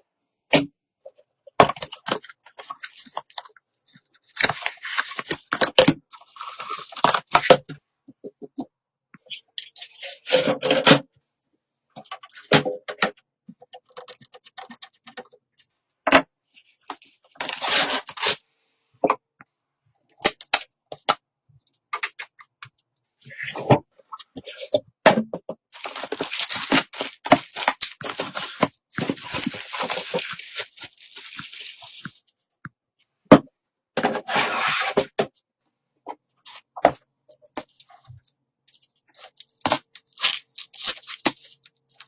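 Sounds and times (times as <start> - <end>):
packaging scraping and tearing: 4.2 - 7.5, 16.9 - 18.4, 25.8 - 32.1, 39.2 - 42.0.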